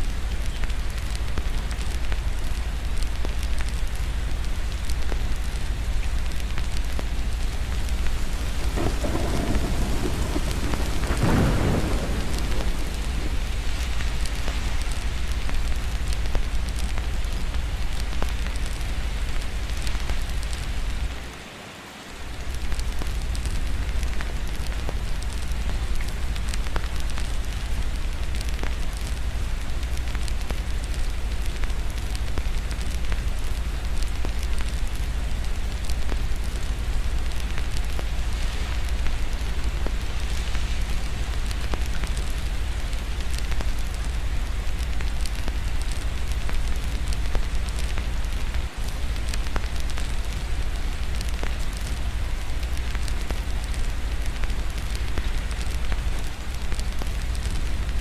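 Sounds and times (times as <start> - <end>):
steady rain: 0.0 - 58.0
thunder rumbling: 7.3 - 18.8.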